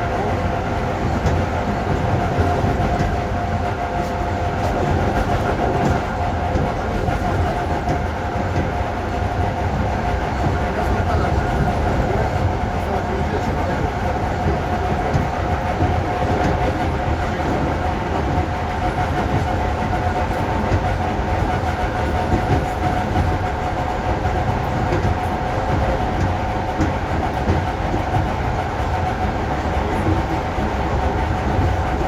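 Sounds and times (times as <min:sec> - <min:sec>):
wheels rumbling on rails: 0:00.0 - 0:32.0.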